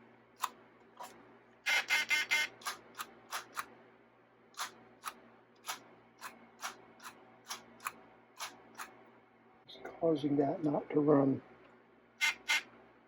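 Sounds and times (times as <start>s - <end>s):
dictation machine mechanical clicks: 2.3s - 3.7s.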